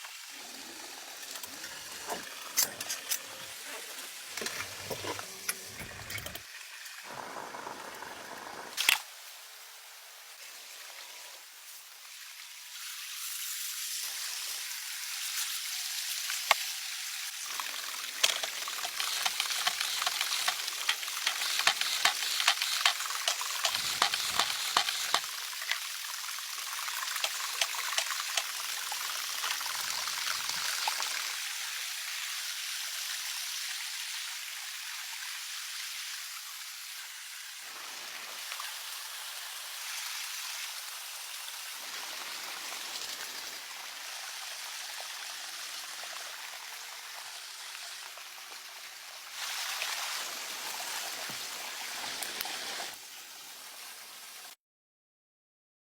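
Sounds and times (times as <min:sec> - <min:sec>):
running water rushing: 0:00.0 - 0:09.5, 0:17.2 - 0:32.0, 0:37.6 - 0:54.2
crackles: 0:17.3 - 0:31.2.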